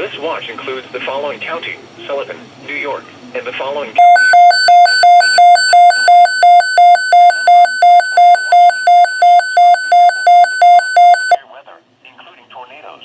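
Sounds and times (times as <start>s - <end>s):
electronic two-tone alert tone: 4.0s - 11.4s.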